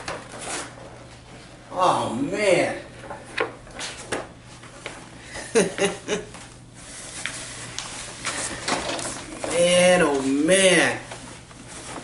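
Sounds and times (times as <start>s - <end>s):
paper rustling: 0.0s - 1.5s, 6.4s - 12.0s.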